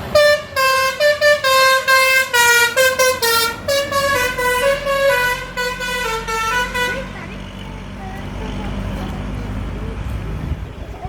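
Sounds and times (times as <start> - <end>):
musical bus horn tune: 0.0 - 10.2.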